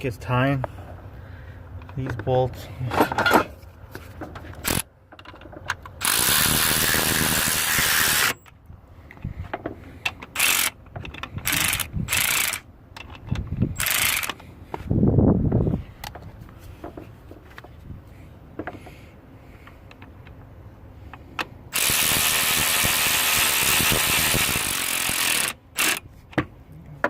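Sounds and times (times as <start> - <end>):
cordless ratchet motor whirring: 6.0 - 8.5, 10.3 - 12.7, 13.7 - 14.4, 21.7 - 26.0.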